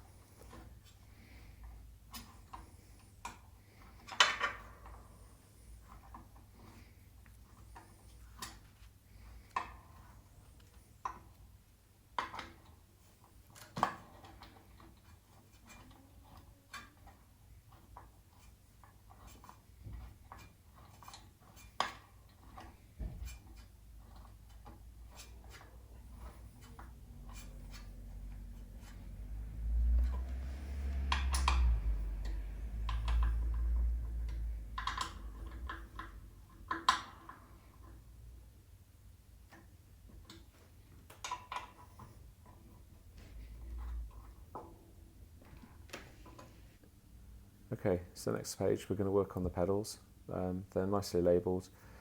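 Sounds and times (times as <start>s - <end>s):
low rumble: 27.0s - 36.3s.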